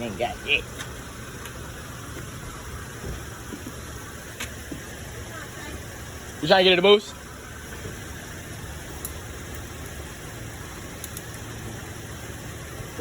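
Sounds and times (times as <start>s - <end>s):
car engine idling: 0.0s - 13.0s
faint clicks: 11.0s - 11.4s.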